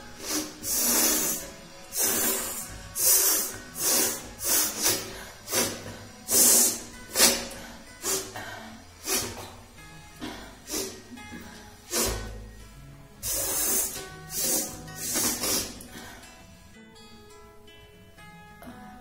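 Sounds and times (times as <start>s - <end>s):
person blowing air through nose: 0.0s - 9.6s, 10.2s - 12.5s, 13.1s - 16.3s.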